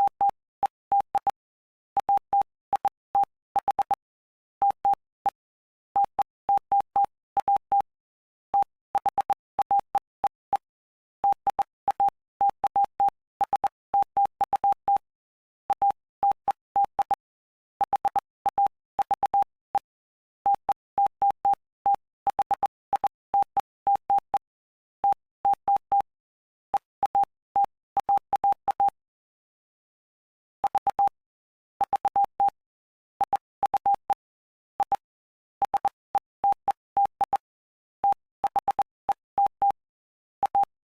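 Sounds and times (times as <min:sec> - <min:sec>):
morse code beeps: 0:30.6 - 0:31.2, 0:31.8 - 0:32.6, 0:33.2 - 0:34.2, 0:35.6 - 0:37.4, 0:38.0 - 0:39.8, 0:40.4 - 0:40.7.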